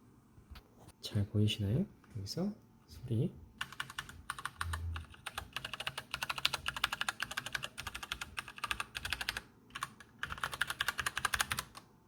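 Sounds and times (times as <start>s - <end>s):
mechanical keyboard clicking: 3.6s - 11.8s.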